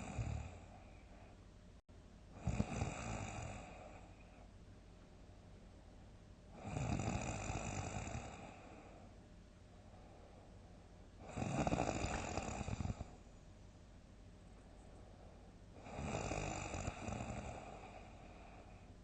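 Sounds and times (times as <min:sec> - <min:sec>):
person snoring: 0:00.0 - 0:00.7, 0:02.4 - 0:04.1, 0:06.6 - 0:09.0, 0:11.2 - 0:13.2, 0:15.8 - 0:18.8
quiet breathing: 0:00.0 - 0:04.7, 0:05.7 - 0:19.0.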